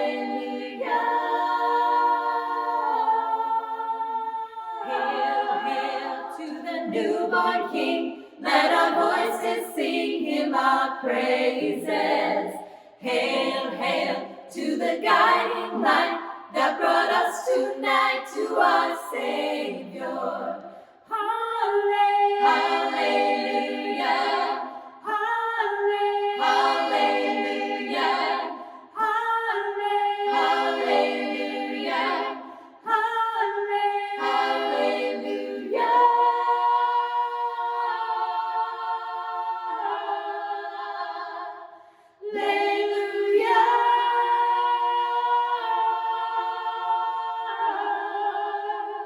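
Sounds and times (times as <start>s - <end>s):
women singing in close harmony: 0.0s - 49.0s.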